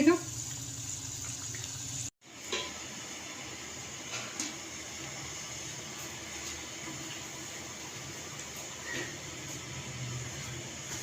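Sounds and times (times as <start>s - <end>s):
oil sizzling: 0.0s - 11.0s.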